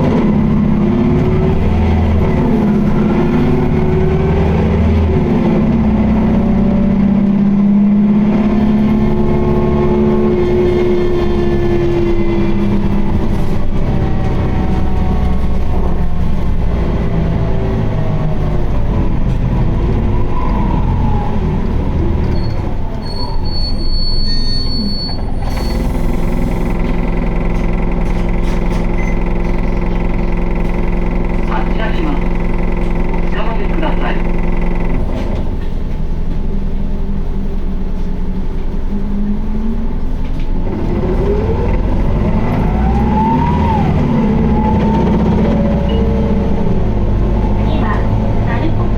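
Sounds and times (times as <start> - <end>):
bus diesel engine whining: 0.0 - 48.9
high squeal: 20.2 - 26.5, 42.4 - 46.6.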